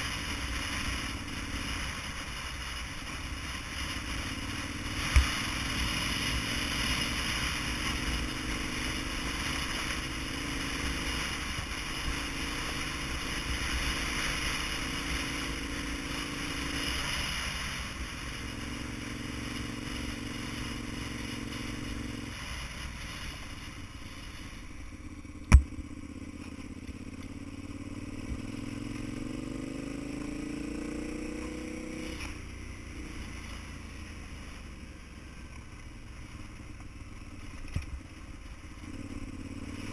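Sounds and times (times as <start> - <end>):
vehicle engine running: 0.0 - 39.9
sharp knock: 25.5 - 25.8.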